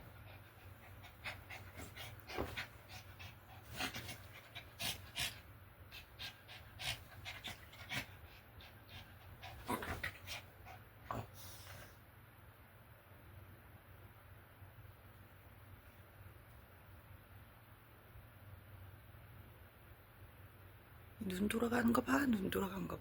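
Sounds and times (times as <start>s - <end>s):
dog panting: 0.0s - 11.0s.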